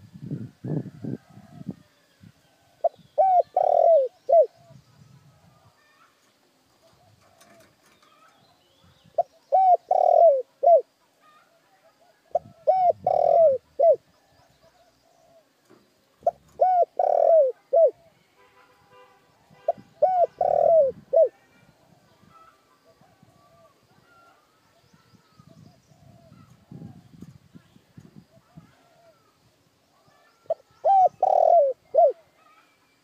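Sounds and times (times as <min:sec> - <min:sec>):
small birds chirping: 0:02.2 - 0:18.4, 0:19.3 - 0:33.0
dove cooing: 0:02.8 - 0:04.8, 0:06.8 - 0:08.2, 0:09.0 - 0:15.6, 0:16.2 - 0:18.1, 0:19.7 - 0:24.5, 0:30.0 - 0:32.6.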